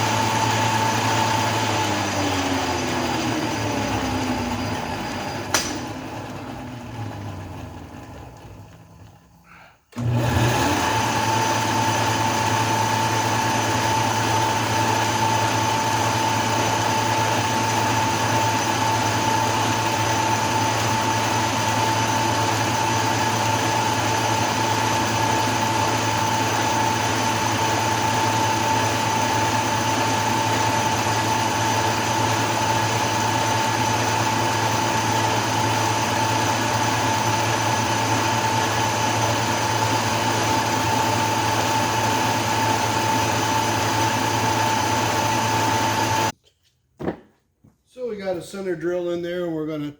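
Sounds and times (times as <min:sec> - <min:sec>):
metal lathe motor hum and whine: 0:10.0 - 0:46.3.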